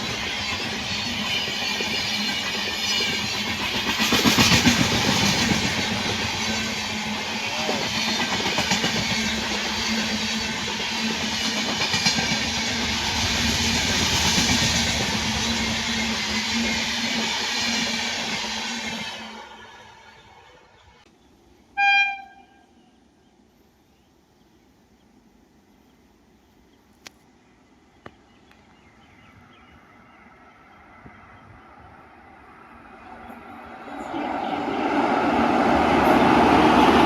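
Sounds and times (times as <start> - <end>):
train wheels rumbling on rails: 0.0 - 20.3, 29.3 - 37.0.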